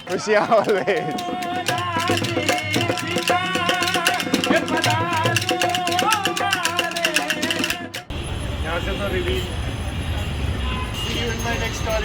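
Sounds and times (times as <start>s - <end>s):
music with fast percussive beat: 0.0s - 8.1s.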